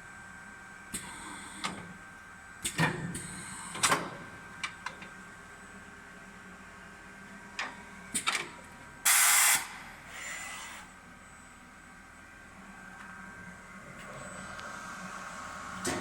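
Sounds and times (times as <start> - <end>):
compressed air hiss: 9.1 - 9.8
low machine hum: 10.9 - 16.0.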